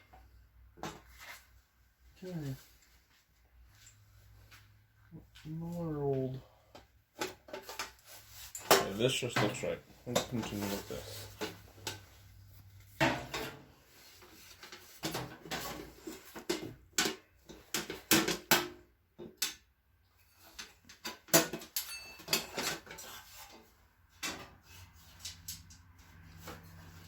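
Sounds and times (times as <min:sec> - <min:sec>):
metal parts clicking and clinking: 0:20.4 - 0:23.5.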